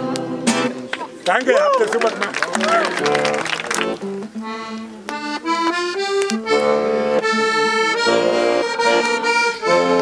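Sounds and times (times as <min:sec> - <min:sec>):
accordion playing: 0:02.1 - 0:10.0.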